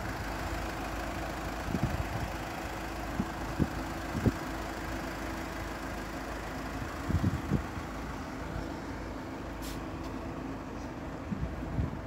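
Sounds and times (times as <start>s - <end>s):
vehicles idling: 0.0s - 12.0s.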